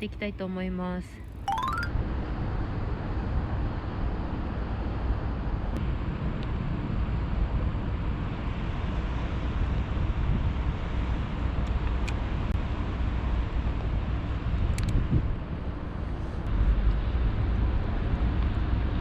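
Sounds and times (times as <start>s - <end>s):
low outdoor rumble: 2.0s - 19.0s.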